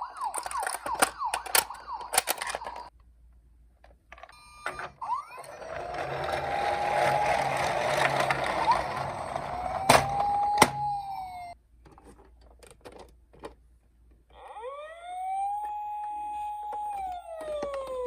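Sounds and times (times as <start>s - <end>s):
toy electronic wail siren: 0.0s - 2.9s, 4.4s - 11.6s, 14.3s - 18.0s.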